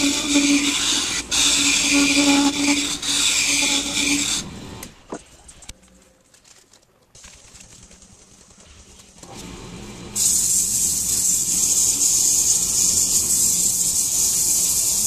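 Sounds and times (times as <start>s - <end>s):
tool hissing on spinning wood: 0.0s - 4.8s, 9.4s - 15.0s
wood lathe humming: 0.0s - 4.9s, 9.2s - 15.0s.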